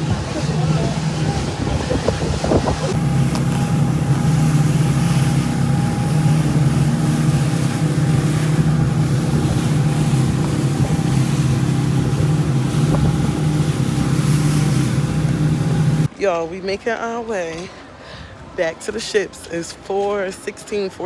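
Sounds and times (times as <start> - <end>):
motorboat engine running: 0.0 - 16.1
water noise: 0.0 - 21.0
wind: 0.0 - 21.0.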